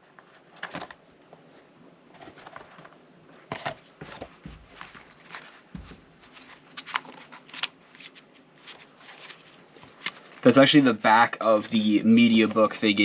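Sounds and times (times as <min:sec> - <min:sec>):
plastic and paper clicks and rustling: 0:00.0 - 0:01.0, 0:02.1 - 0:10.6.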